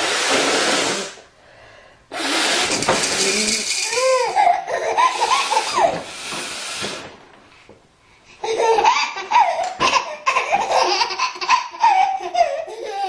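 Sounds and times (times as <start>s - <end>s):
baby belly-laughing: 3.8s - 6.0s, 8.4s - 13.0s.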